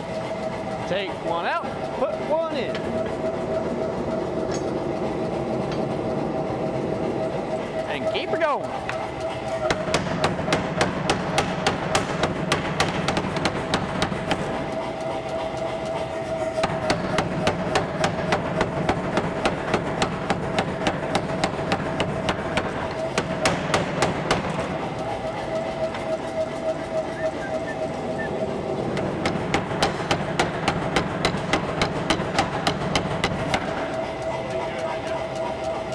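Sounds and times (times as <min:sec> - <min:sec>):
steady machine hum: 0:00.0 - 0:35.9
power hammer striking hot steel: 0:09.6 - 0:15.0, 0:16.5 - 0:24.7, 0:28.8 - 0:34.4.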